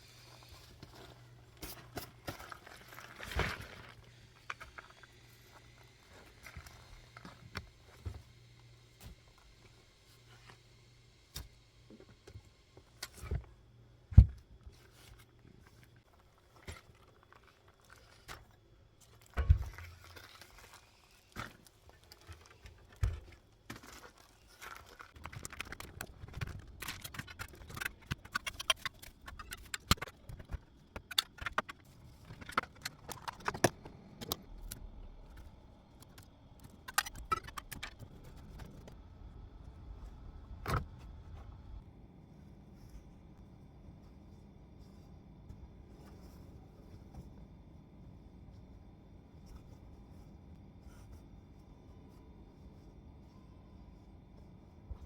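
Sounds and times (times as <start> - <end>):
objects knocking and clicking: 24.8 - 39.0.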